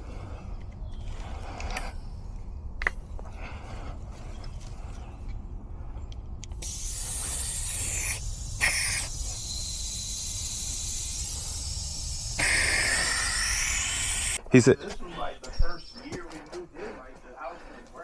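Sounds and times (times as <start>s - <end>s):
pressurized gas hissing: 6.6s - 14.4s.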